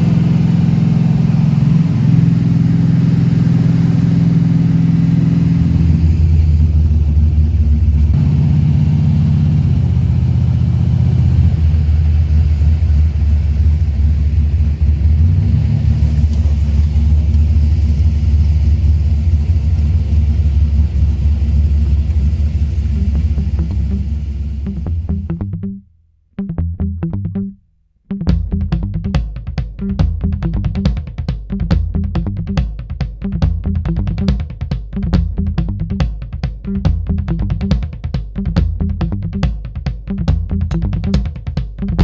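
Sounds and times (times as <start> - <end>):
car engine running: 0.0 - 25.4.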